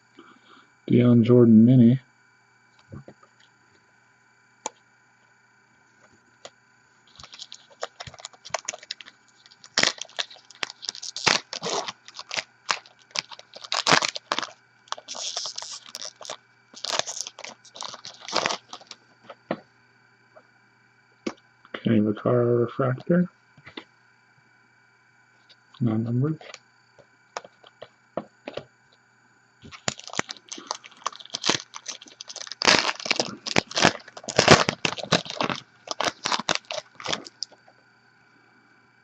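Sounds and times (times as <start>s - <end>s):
cards crinkling and crackling: 7.1s - 19.0s, 27.4s - 27.9s, 29.6s - 37.6s.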